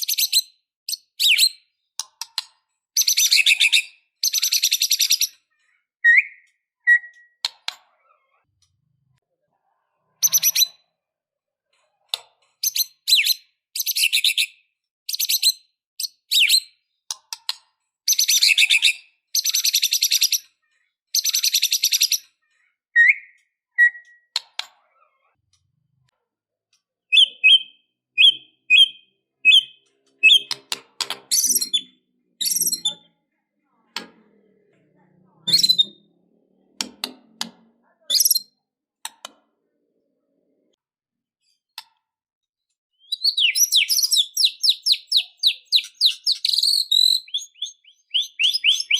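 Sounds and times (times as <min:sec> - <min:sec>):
bird singing trilled phrases: 0:00.0 - 0:02.0, 0:03.0 - 0:07.4, 0:12.6 - 0:17.1, 0:18.1 - 0:24.3, 0:27.1 - 0:30.6, 0:31.3 - 0:33.1, 0:35.4 - 0:36.1, 0:38.1 - 0:38.6, 0:42.9 - 0:48.9.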